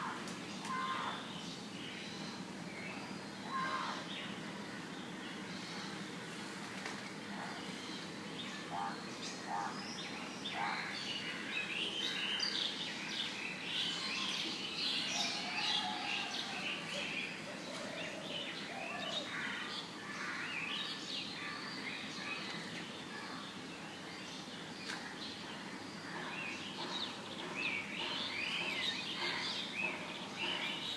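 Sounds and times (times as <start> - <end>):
recording noise hiss: 0.0 - 30.9
birds chirping: 7.3 - 30.9.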